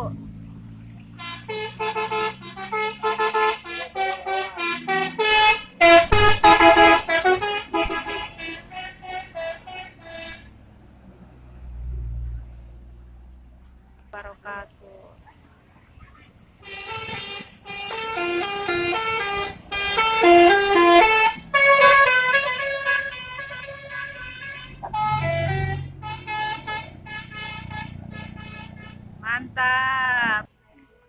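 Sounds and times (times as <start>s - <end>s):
low engine rumble: 0.0s - 30.5s
musical air horn tune: 1.2s - 10.5s, 16.6s - 29.1s
short quick horn toots: 16.6s - 29.1s.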